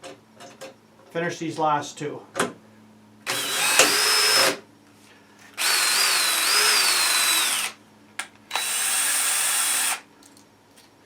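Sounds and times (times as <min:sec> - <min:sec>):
power drill driving screws into wood: 0:03.3 - 0:04.6, 0:05.6 - 0:07.8, 0:08.5 - 0:10.0.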